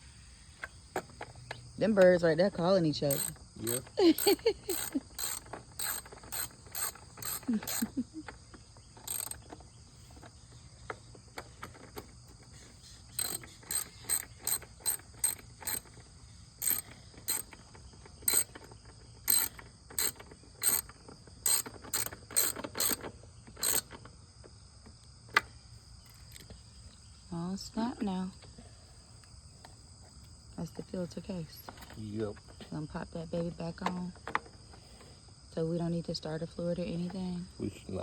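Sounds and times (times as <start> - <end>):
high insect drone: 0.0 - 38.0
hand tools clicking: 1.9 - 8.3, 9.0 - 9.6, 13.2 - 16.0, 16.6 - 24.0.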